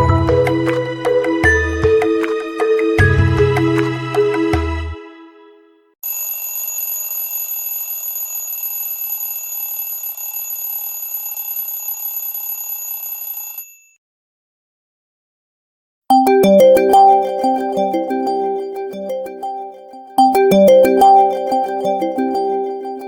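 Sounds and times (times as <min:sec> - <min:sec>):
phone bell trill: 0:06.0 - 0:14.0
melodic phone tone: 0:16.1 - 0:23.0.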